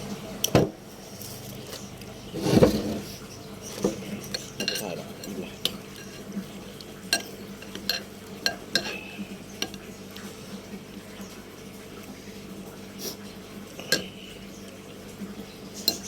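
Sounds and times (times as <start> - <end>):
cutlery clinking against a bowl: 3.6 - 10.3, 13.8 - 14.2, 15.8 - 16.0.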